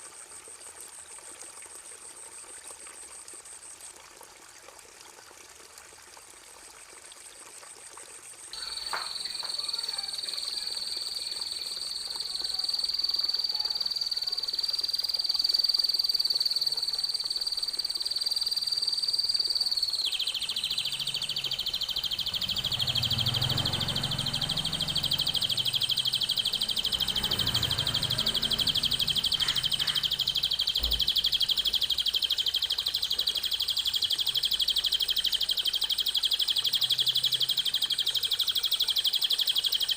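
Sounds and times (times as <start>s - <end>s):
songbird trilling: 8.6s - 39.9s.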